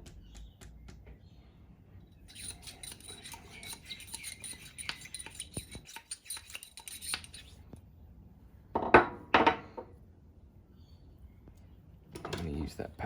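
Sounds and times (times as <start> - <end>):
plastic stirring in liquid: 2.3 - 7.6.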